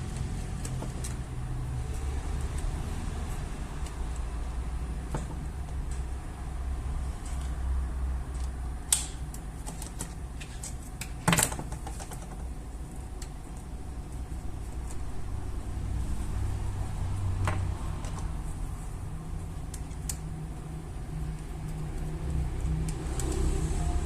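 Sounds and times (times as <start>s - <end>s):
clicks of laptop parts handled: 8.3s - 12.5s.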